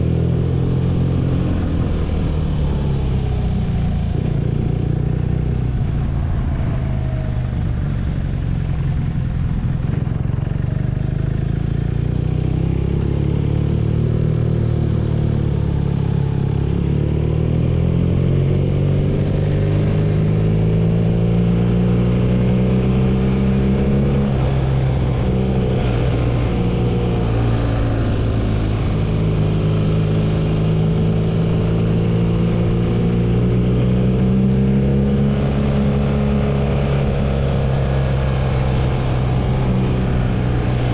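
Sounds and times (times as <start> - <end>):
motorcycle engine running: 3.5 - 17.1.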